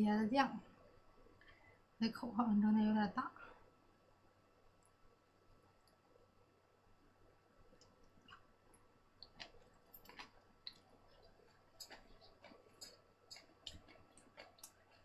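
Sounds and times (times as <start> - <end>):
person chewing food: 7.7 - 15.0.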